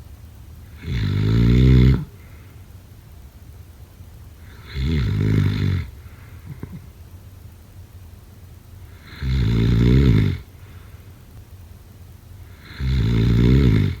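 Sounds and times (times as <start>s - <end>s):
person snoring: 0.8s - 2.2s, 8.9s - 10.5s, 12.5s - 14.0s
quiet breathing: 1.9s - 2.8s, 5.8s - 7.1s, 10.4s - 11.4s.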